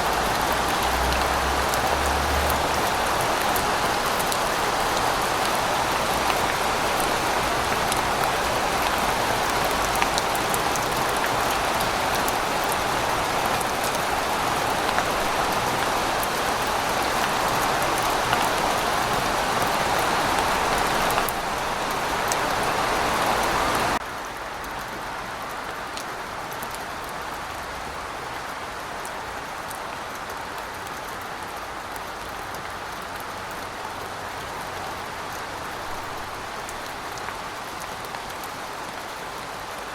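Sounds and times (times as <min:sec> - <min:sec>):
distant traffic rumble: 0:00.0 - 0:24.0
steady rain: 0:00.0 - 0:39.9.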